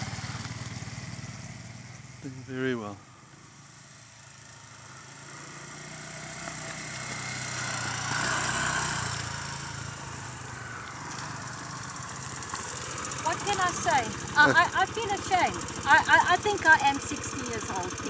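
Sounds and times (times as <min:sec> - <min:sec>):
motorcycle engine passing: 0:00.0 - 0:18.0.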